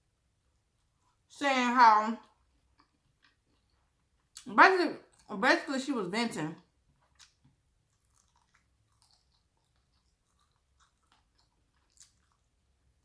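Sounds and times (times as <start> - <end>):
chewing crispy chicken: 2.2 - 5.4, 6.6 - 13.0.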